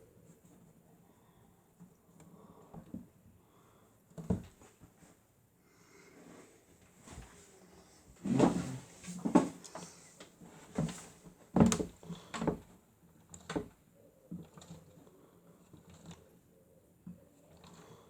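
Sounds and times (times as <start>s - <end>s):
toy washing machine rattling: 11.6s - 16.4s, 17.4s - 18.0s.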